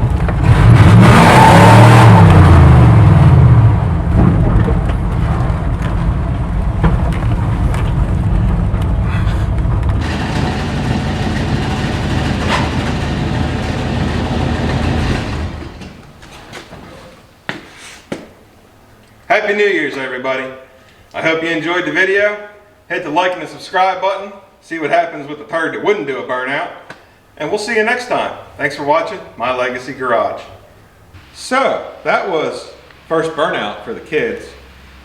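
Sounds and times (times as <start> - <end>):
engine revving hard: 0.3 - 4.1, 10.0 - 16.0.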